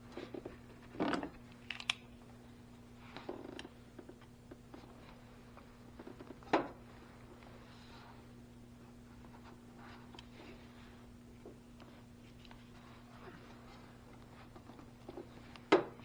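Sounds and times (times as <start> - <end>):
steady low hum: 0.0 - 16.0
tools scraping and clicking: 1.5 - 2.0.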